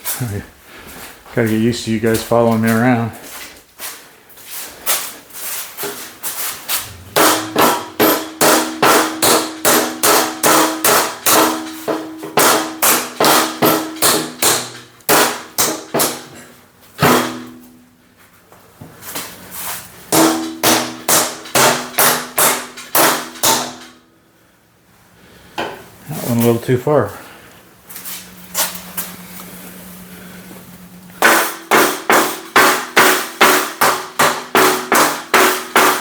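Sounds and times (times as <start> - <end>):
hammer blows on steel: 6.8 - 16.4, 31.2 - 36.0.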